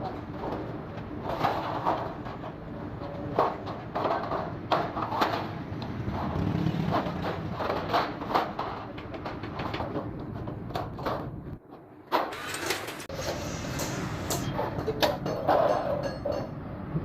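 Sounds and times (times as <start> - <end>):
machine hum: 12.3 - 15.0.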